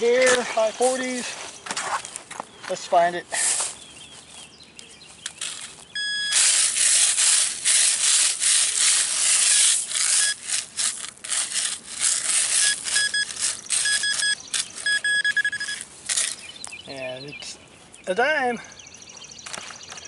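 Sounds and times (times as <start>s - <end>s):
digging tool scraping soil: 3.3s - 3.8s, 5.3s - 15.0s
high-pitched electronic beeps: 6.0s - 6.8s, 10.0s - 10.5s, 12.4s - 15.8s.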